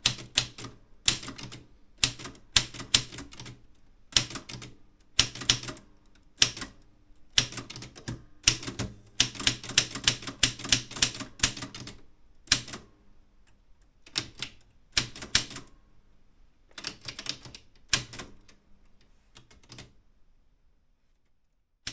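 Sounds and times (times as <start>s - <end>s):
typewriter keys clicking: 0.0s - 12.9s, 14.1s - 15.7s, 16.7s - 18.6s, 19.4s - 20.0s.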